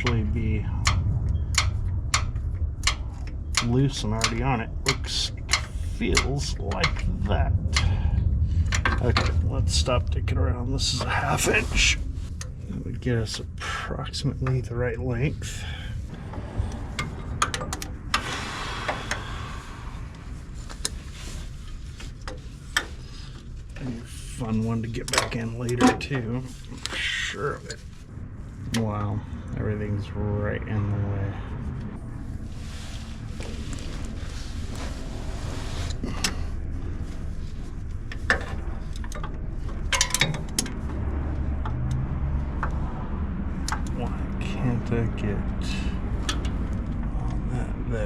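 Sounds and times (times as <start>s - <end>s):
steady low rumble: 0.0s - 48.0s.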